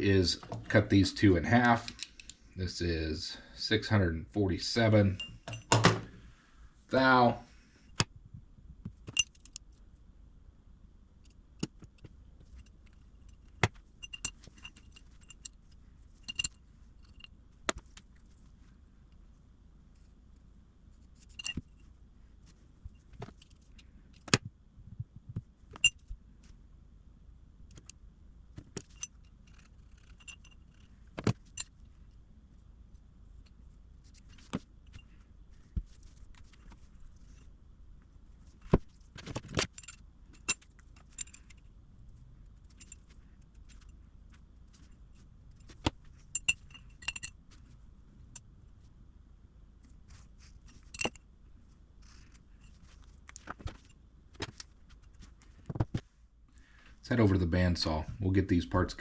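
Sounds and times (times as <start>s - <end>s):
faint low hum: 0.0s - 59.0s
metal parts clinking: 16.2s - 17.3s, 28.8s - 31.7s, 39.4s - 41.6s.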